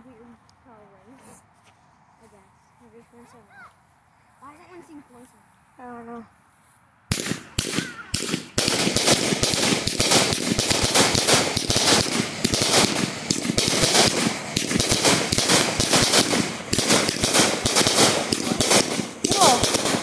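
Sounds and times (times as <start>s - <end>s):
fireworks cracking and popping: 7.1s - 20.0s.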